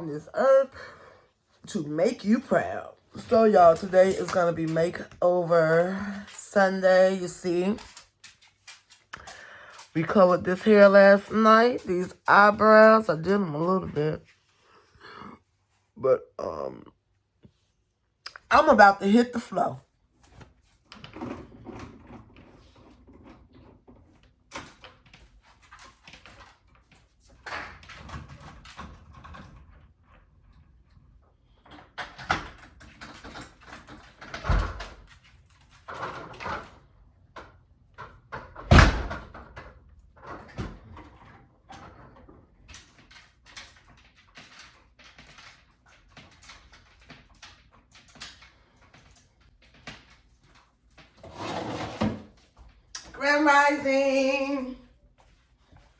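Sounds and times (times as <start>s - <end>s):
doors and cupboards opening and shutting: 20.3s - 53.2s.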